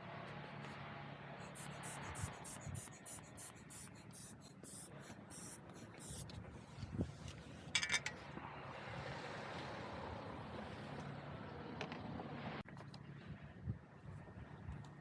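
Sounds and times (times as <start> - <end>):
rhythmic hissing strokes: 1.4 - 6.3.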